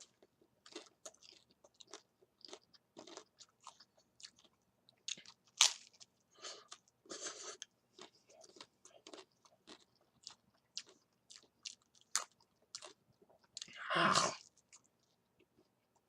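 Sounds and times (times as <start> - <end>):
chewing crunchy food: 0.0 - 16.0.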